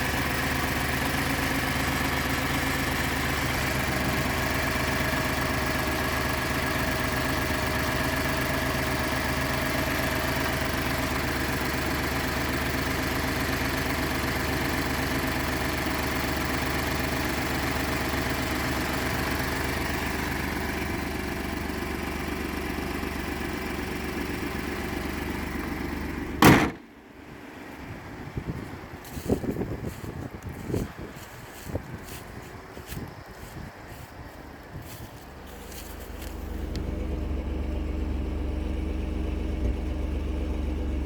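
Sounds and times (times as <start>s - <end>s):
engine idling: 0.0s - 41.0s
loud thump: 26.4s - 26.9s.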